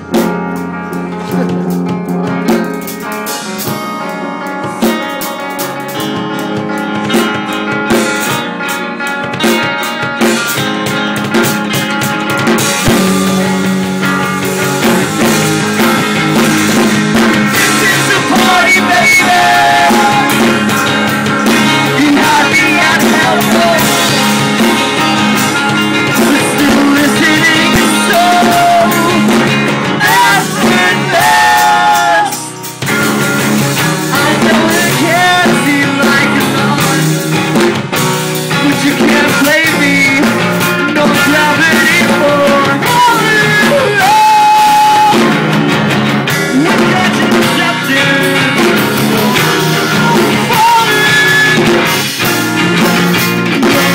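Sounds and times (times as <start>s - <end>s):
live rock band: 0.0s - 53.9s
person singing: 0.9s - 7.2s, 17.2s - 32.8s, 33.7s - 45.4s, 46.4s - 53.9s.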